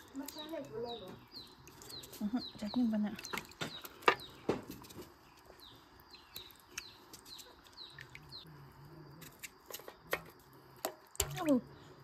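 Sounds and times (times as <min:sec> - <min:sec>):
small bird chirping: 0:00.0 - 0:08.6.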